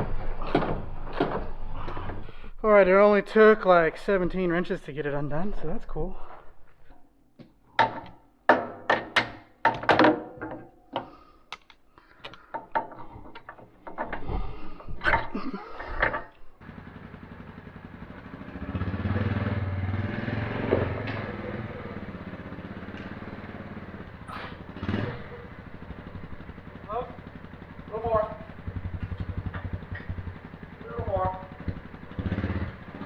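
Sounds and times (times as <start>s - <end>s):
diesel engine idling: 14.4s - 33.0s.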